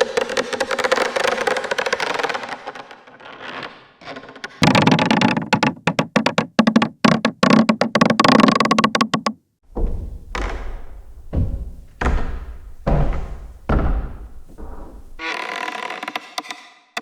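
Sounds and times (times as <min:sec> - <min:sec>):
wooden stairs creaking: 0:04.6 - 0:16.2.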